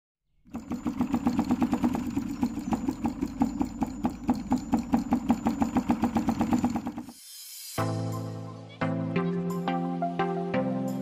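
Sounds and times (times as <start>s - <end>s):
solenoid engine clattering: 0.4s - 7.1s.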